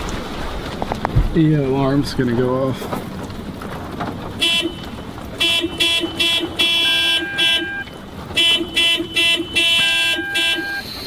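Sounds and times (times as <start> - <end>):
car alarm horn honking: 4.4 - 11.0.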